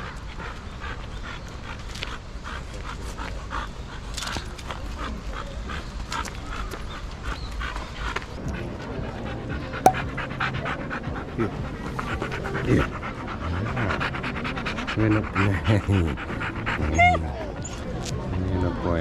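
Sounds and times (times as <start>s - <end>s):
dog panting: 12.2s - 17.7s.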